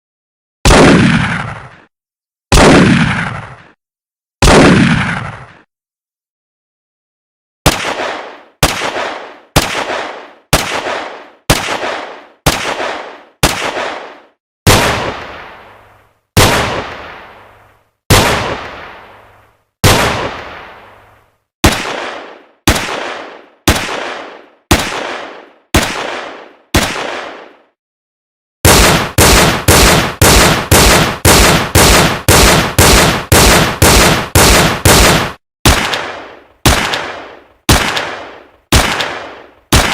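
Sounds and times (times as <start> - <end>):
single gunshots with echo: 0.6 - 1.9, 2.5 - 3.8, 4.4 - 5.6, 7.6 - 27.7, 28.6 - 39.9
rapid automatic gunfire: 28.6 - 39.9.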